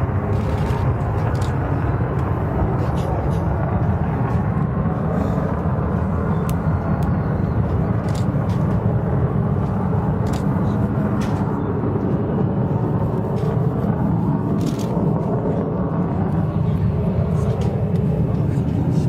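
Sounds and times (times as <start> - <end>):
distant jet engines rumbling: 0.0 - 19.0.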